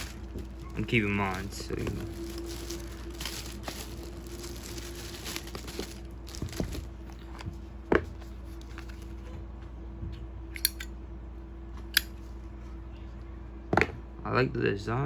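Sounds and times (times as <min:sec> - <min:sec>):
packaging crinkling and rustling: 0:00.0 - 0:09.2.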